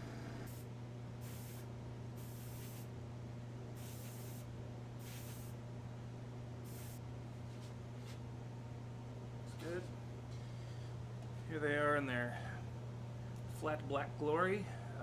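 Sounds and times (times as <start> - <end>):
airbrush spraying hiss: 1.2 - 2.9, 3.8 - 5.6, 6.7 - 7.0.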